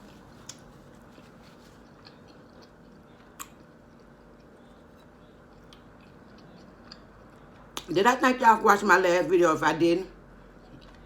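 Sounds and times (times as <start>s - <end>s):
chewing wet mouth sounds: 0.3s - 7.9s.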